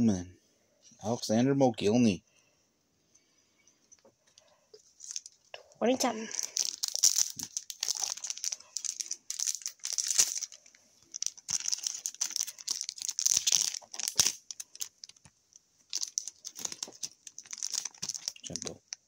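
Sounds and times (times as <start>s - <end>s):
plastic wrappers crinkling: 4.0s - 19.0s
cards rustling: 4.9s - 5.4s, 6.1s - 19.0s.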